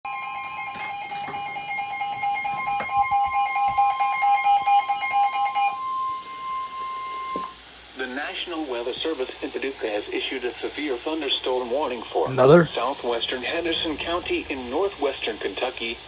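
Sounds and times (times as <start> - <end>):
steady warning alarm tone: 0.1 - 7.6.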